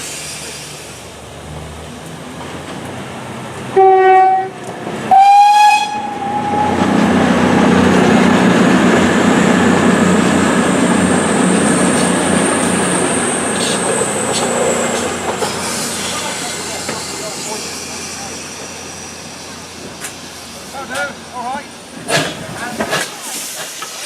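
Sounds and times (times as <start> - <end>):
train wheels rumbling on rail: 0.0 - 24.0
steam locomotive whistle blasts: 3.8 - 4.5, 5.1 - 6.8.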